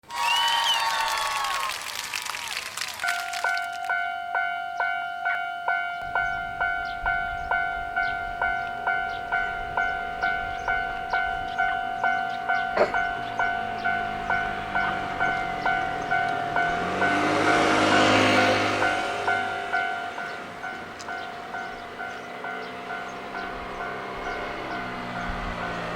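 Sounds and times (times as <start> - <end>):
railroad crossing bell ringing: 3.0 - 25.9
approaching train rumble: 5.9 - 25.9.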